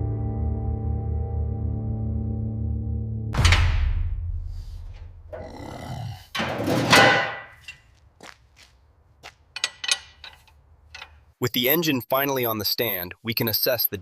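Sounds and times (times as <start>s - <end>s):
heavy metal clunks and scraping: 4.6s - 8.0s, 9.5s - 11.4s
small clicks and knocks: 9.3s - 11.3s.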